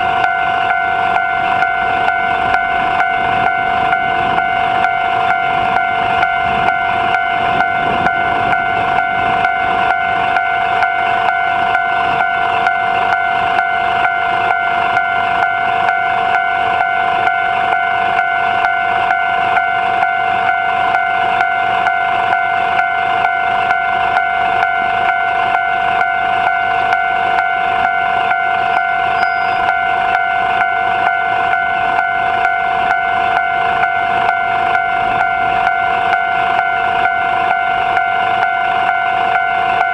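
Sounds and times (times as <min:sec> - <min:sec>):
level crossing alarm bell: 0:00.0 - 0:39.9.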